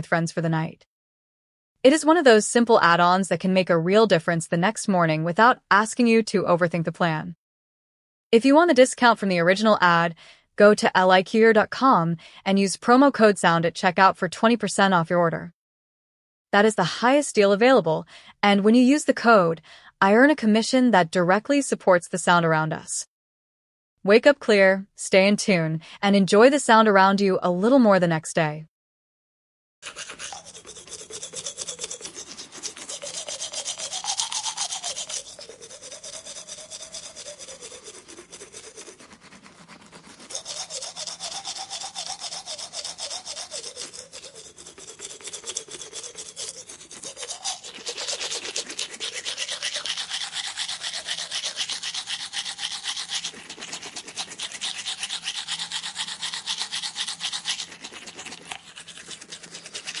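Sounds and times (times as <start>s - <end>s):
electric toothbrush scrubbing teeth: 29.8s - 60.0s.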